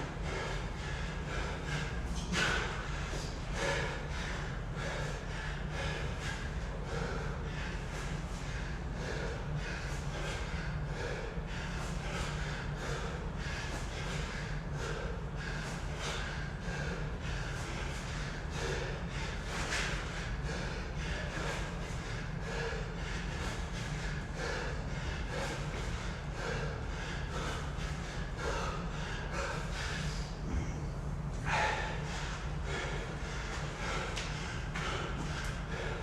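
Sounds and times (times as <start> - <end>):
person panting: 0.0 - 36.0
steady low drone: 0.0 - 36.0.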